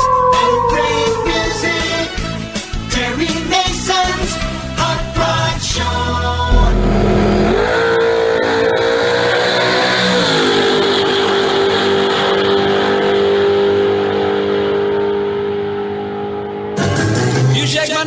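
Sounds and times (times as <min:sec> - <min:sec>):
car engine revving: 0:06.5 - 0:17.4.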